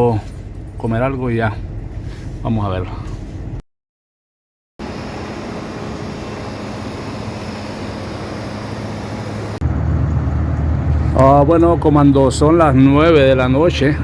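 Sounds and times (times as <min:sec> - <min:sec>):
deep engine hum: 0:04.8 - 0:14.0.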